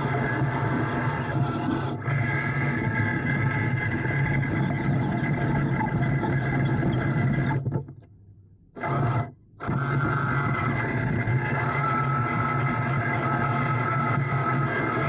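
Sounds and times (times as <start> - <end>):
machine motor hum and whine: 0.0 - 7.8, 8.8 - 15.0.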